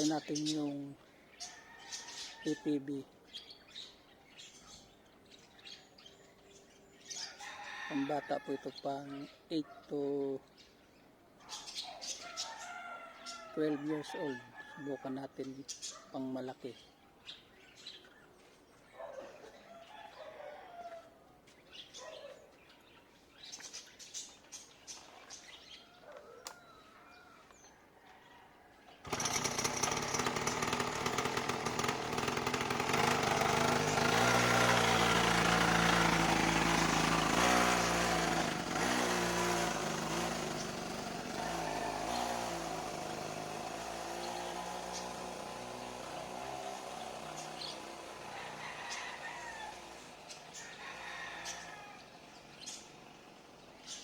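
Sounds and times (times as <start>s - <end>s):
small atv engine: 0.0s - 1.0s, 5.6s - 9.2s, 13.4s - 15.4s, 29.0s - 54.0s.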